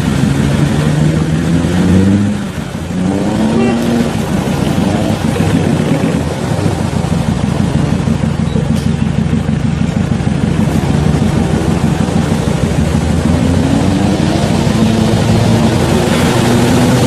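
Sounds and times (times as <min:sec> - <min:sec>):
vehicle engine low rumble: 0:00.0 - 0:17.0.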